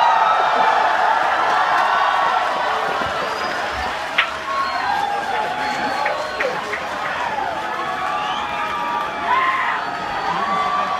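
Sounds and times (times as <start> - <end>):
audience cheering and screaming: 0.0 - 10.9.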